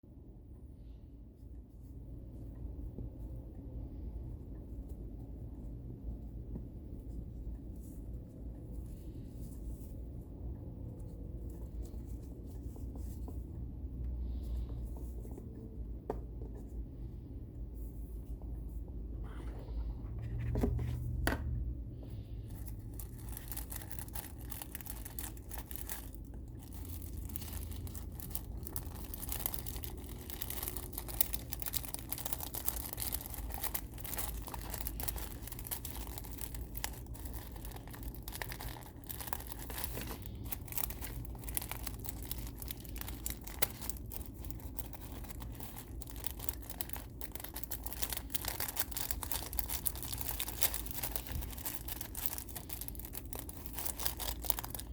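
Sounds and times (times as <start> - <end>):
paper packaging crinkling: 22.5 - 54.9.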